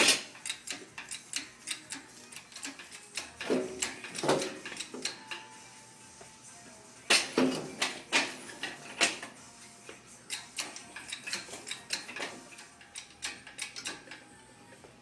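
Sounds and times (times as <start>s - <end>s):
hand tools clinking on metal: 0.0s - 5.6s, 10.2s - 14.3s.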